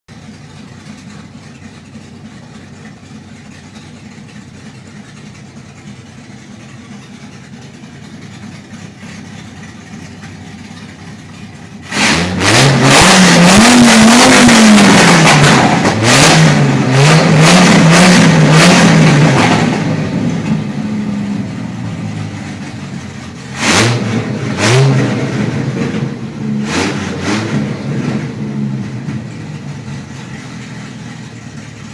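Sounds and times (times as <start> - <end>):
car engine idling and revving: 0.1 - 31.9.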